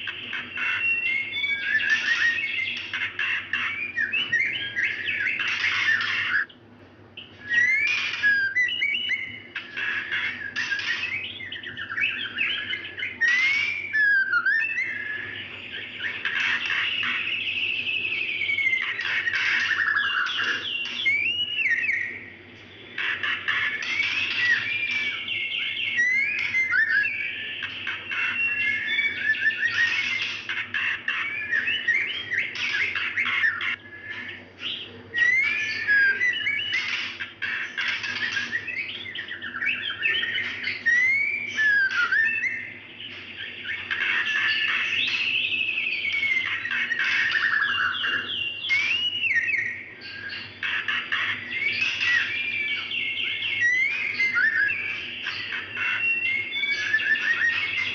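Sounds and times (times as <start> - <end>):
bird chirps and whistles: 0.0 - 6.6, 7.2 - 57.9.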